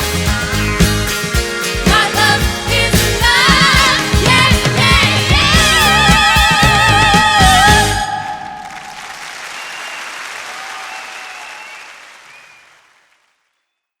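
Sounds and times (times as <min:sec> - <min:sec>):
audience applauding: 0:08.2 - 0:13.6.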